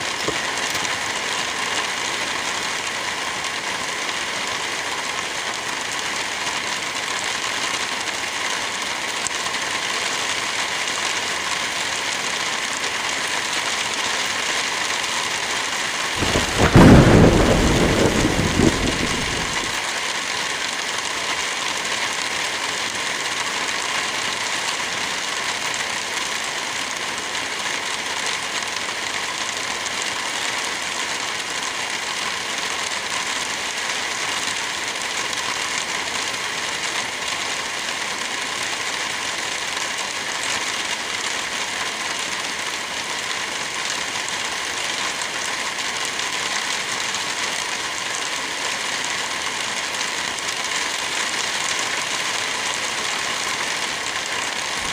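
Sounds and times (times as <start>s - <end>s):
steady rain falling: 0.0s - 54.9s
deep rumble: 16.2s - 19.8s.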